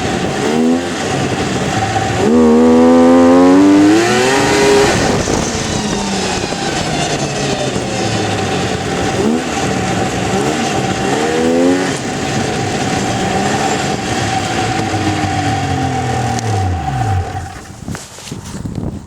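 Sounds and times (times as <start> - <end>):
snowmobile engine whining and revving: 0.0 - 17.9.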